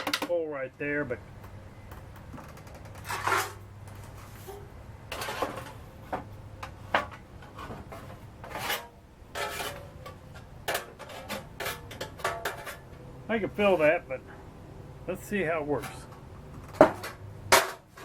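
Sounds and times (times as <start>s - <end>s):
sheet metal clanks and scrapes: 2.6s - 13.1s, 15.8s - 18.0s.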